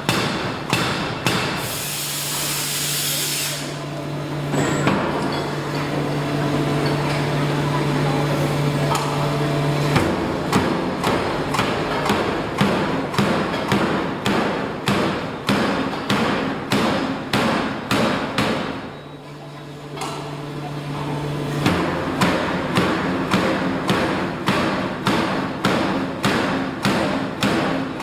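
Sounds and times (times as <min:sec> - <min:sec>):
hammer striking hot metal: 0:00.0 - 0:01.7, 0:10.0 - 0:18.8
steady machine hum: 0:00.0 - 0:28.0.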